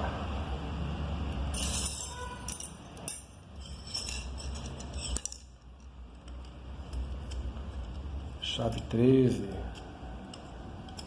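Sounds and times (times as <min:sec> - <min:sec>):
metal hand tools clinking: 0:01.5 - 0:05.9.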